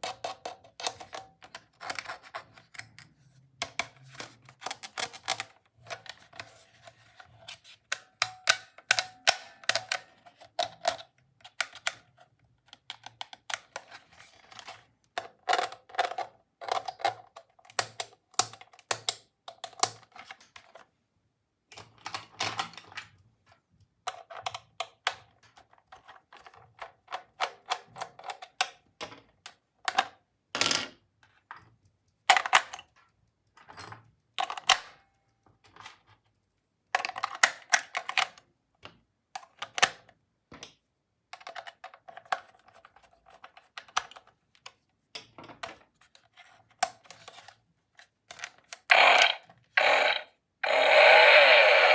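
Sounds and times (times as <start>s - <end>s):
plastic toy clicks and rattles: 0.0s - 3.0s, 3.6s - 6.8s, 7.8s - 20.8s, 48.3s - 51.9s.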